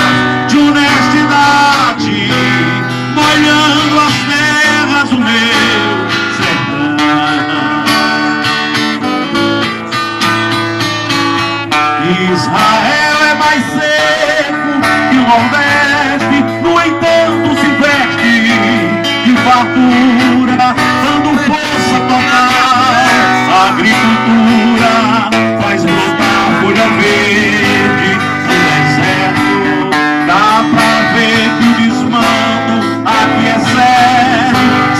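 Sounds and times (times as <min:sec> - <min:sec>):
amplified live acoustic guitar music: 0:00.0 - 0:34.9.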